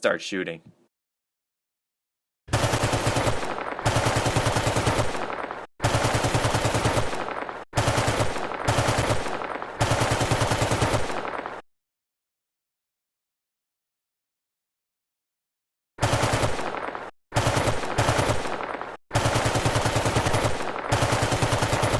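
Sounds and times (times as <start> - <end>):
automatic gunfire bursts: 2.5 - 11.6, 16.0 - 21.9.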